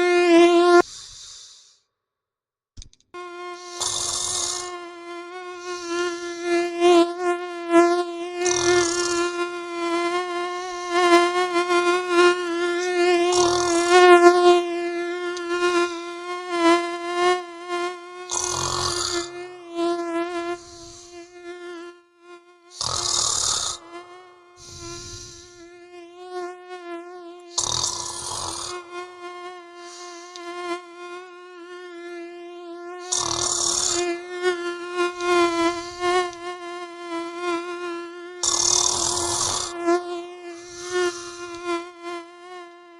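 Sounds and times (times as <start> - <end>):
mosquito whining: 0.0 - 1.7, 3.2 - 42.9
person snoring: 0.8 - 1.8, 3.5 - 4.7, 5.4 - 6.5, 8.4 - 9.4, 10.4 - 11.2, 12.8 - 14.0, 18.2 - 19.4, 20.4 - 21.4, 22.7 - 24.0, 24.6 - 25.6, 27.5 - 28.9, 29.7 - 30.5, 33.0 - 34.1, 35.4 - 36.4, 38.4 - 39.8, 40.5 - 41.6.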